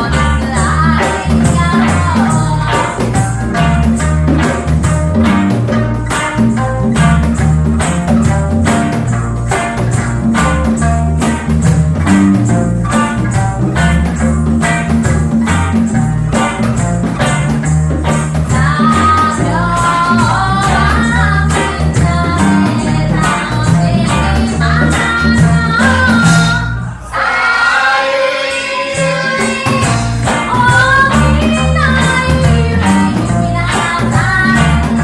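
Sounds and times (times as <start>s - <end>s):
person singing: 0.0s - 4.6s, 18.4s - 35.0s
reggae band playing: 0.0s - 35.0s.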